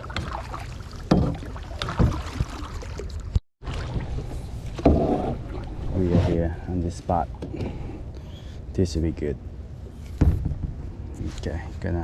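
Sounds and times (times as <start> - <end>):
sharp knocks and thumps: 1.1 - 2.4, 10.1 - 10.9.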